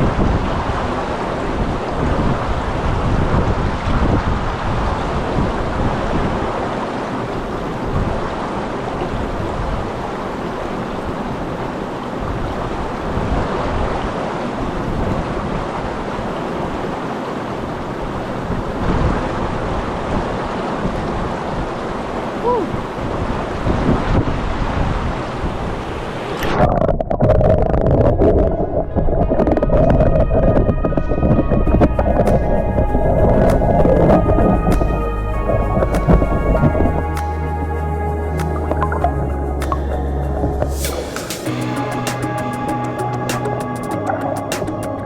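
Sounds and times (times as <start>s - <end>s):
wind buffeting microphone: 0.0s - 43.2s
waterfall rushing water: 32.2s - 45.0s.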